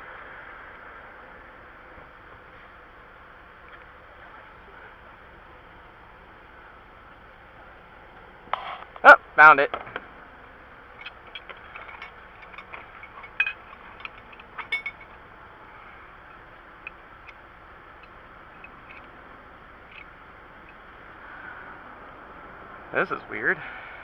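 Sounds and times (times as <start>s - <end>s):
metallic tool clicks and rattles: 11.0s - 15.2s, 18.0s - 19.1s.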